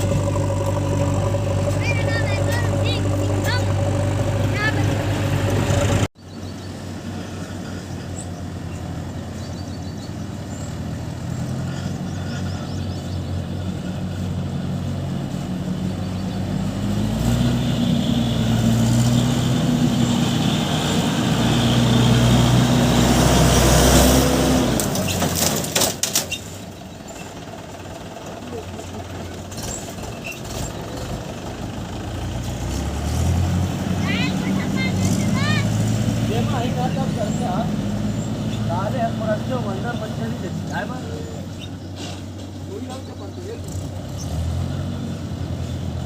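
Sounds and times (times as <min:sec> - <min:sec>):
diesel engine revving under load: 0:00.0 - 0:46.0.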